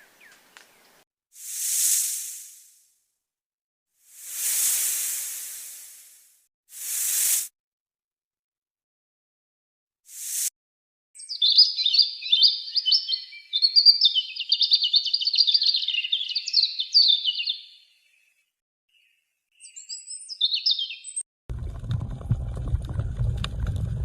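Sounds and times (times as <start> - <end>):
songbird twittering warble: 11.2 - 18.3, 18.9 - 21.2.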